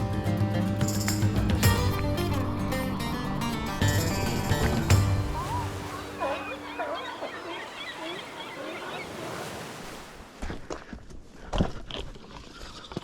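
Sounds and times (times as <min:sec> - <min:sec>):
surf washing: 0:03.1 - 0:10.6
small birds chirping: 0:05.3 - 0:09.3
footsteps on forest trail: 0:10.2 - 0:13.0.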